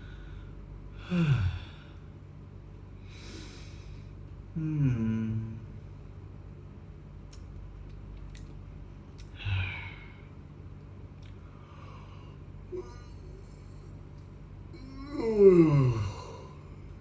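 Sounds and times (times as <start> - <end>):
low steady hum: 0.0 - 17.0
person sighing sleepily: 1.0 - 2.0, 4.6 - 5.8, 9.3 - 10.2, 11.7 - 13.7, 14.8 - 16.9.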